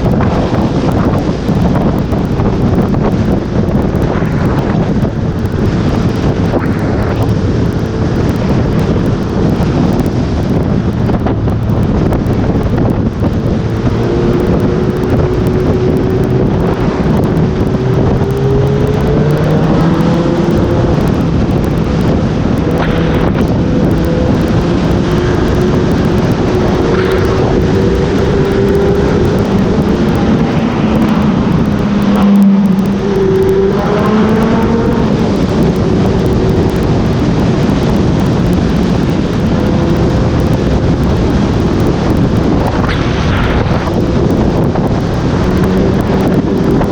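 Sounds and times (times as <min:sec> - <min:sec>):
motorcycle engine revving: 0:00.0 - 0:46.9
wind noise on microphone: 0:00.0 - 0:46.9.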